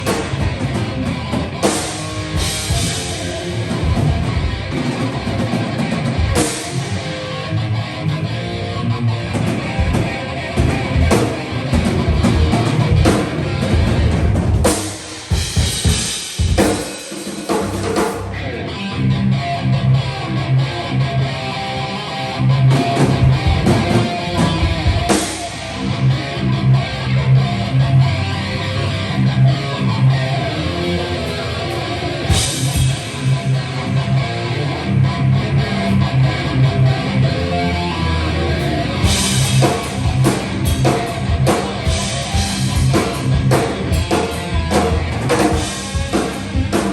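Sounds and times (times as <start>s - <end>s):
drum kit: 0.0s - 7.3s, 9.3s - 18.4s, 22.7s - 26.2s, 30.8s - 34.2s, 38.5s - 46.9s
distorted electric guitar: 0.0s - 46.9s.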